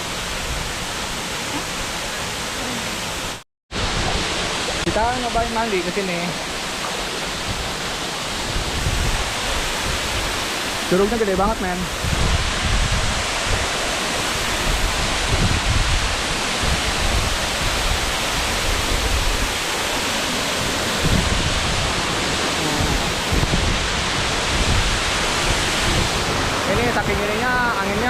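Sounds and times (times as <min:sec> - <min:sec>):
waterfall rushing: 0:00.0 - 0:28.0
wind buffeting microphone: 0:07.4 - 0:10.4, 0:11.8 - 0:27.2.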